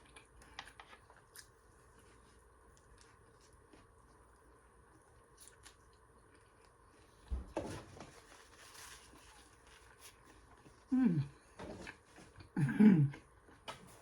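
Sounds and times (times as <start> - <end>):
person chewing: 0.0 - 7.2.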